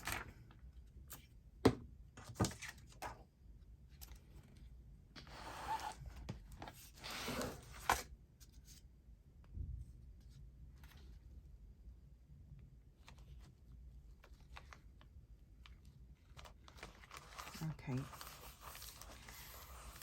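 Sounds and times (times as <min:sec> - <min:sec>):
paper rustling: 0:15.7 - 0:20.0.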